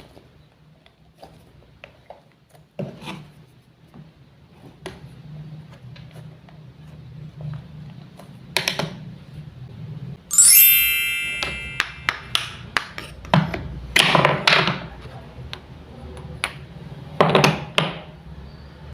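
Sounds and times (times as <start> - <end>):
bright ringing ping: 10.3 - 12.6.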